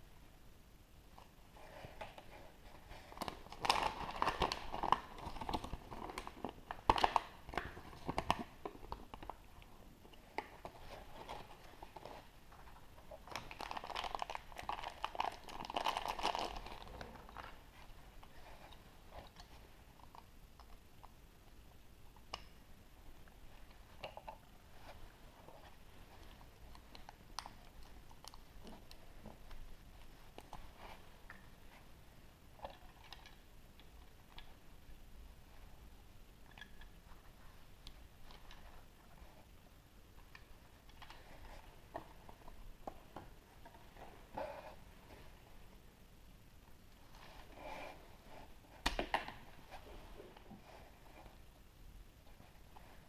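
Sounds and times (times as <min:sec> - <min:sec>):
foil crinkling: 0:13.3 - 0:17.6.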